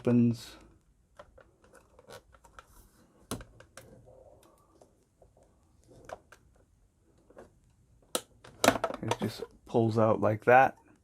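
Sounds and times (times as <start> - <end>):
plastic parts clicking and tapping: 1.0 - 2.7, 6.0 - 9.6.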